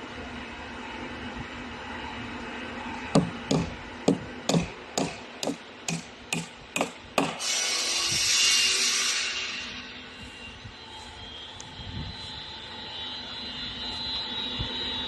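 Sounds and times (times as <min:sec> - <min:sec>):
harsh tool noise: 0:03.1 - 0:10.0
hammer striking plastic board: 0:03.2 - 0:07.4.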